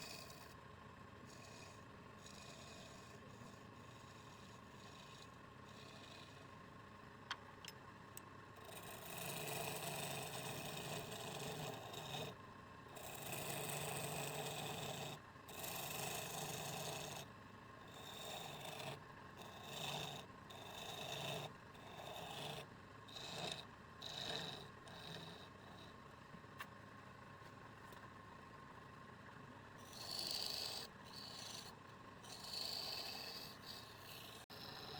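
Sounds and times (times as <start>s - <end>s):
wood scraping on a lathe: 32.3s - 34.9s.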